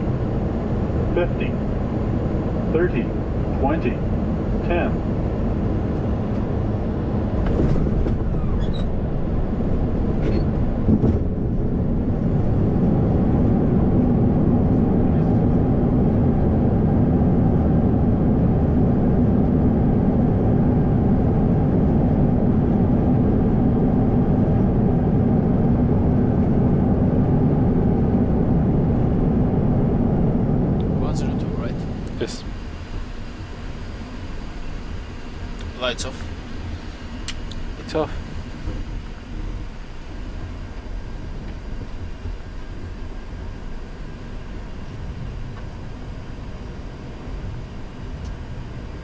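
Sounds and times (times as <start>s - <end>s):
aircraft rolling rumble: 0.0s - 49.0s
aircraft landing knocks: 7.2s - 11.8s.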